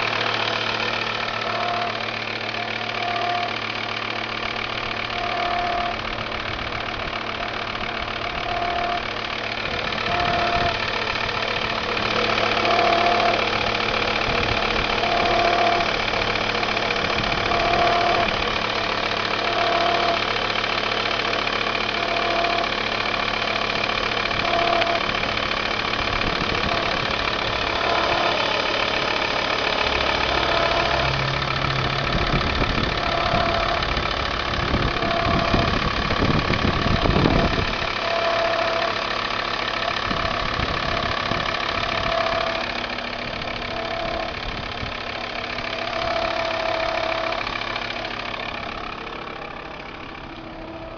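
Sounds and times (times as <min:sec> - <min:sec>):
diesel engine idling: 0:00.0 - 0:50.9
short tone: 0:26.4 - 0:39.0.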